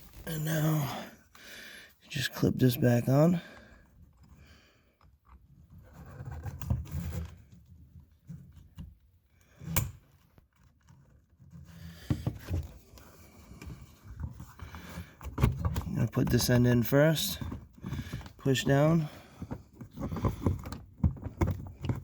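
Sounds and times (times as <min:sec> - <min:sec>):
plastic switch parts rubbing and clicking: 0:12.3 - 0:22.0.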